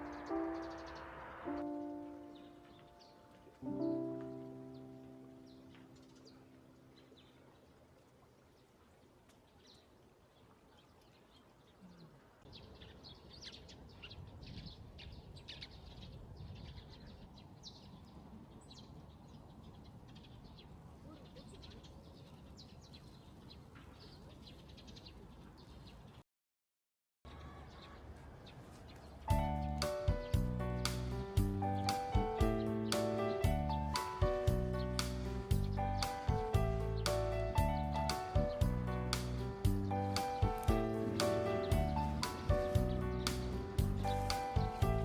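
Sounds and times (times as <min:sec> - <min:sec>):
piano note: 0:00.0 - 0:07.1, 0:29.3 - 0:45.0
faint outdoor background: 0:00.0 - 0:26.2, 0:27.2 - 0:45.0
small birds chirping: 0:00.0 - 0:26.2, 0:27.3 - 0:45.0.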